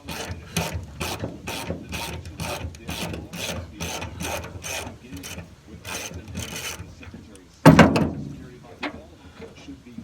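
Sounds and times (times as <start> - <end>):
ratchet wrench clicking: 0.0 - 6.8.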